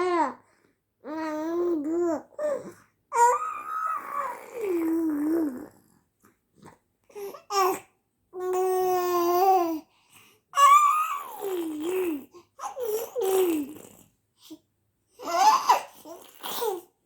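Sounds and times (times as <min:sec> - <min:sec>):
baby babbling: 0:01.0 - 0:05.7, 0:08.4 - 0:09.8, 0:15.2 - 0:16.9.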